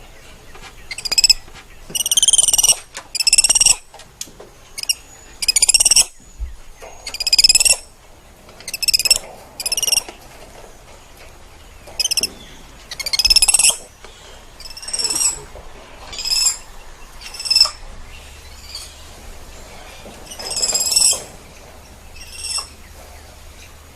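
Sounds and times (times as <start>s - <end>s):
monkey chirping calls: 0.9s - 3.8s, 4.8s - 6.2s, 7.0s - 7.9s, 8.6s - 10.1s, 12.0s - 12.3s, 12.9s - 13.8s, 14.6s - 15.4s, 16.1s - 17.8s, 20.3s - 21.2s, 22.2s - 22.8s.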